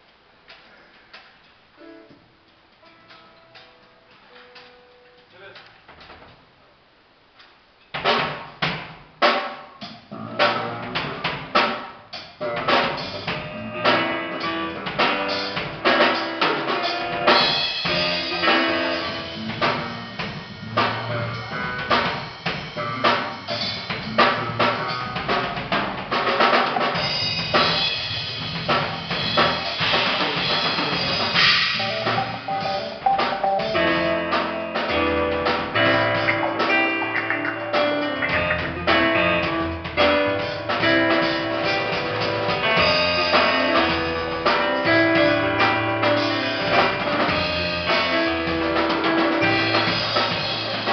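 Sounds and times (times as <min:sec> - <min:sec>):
drum kit playing: 0:00.0 - 0:06.6, 0:07.4 - 0:50.9
pitched instruments playing: 0:29.8 - 0:50.9.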